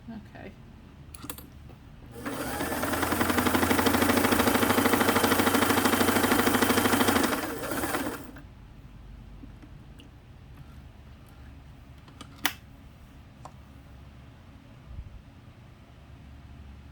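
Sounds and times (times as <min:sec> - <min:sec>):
sewing machine running: 0:02.2 - 0:08.4.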